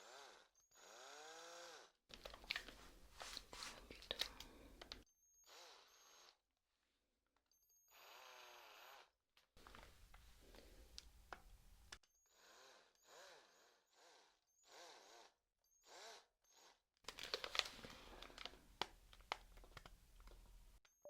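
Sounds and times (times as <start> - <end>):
electric drill spinning: 0.0 - 6.4.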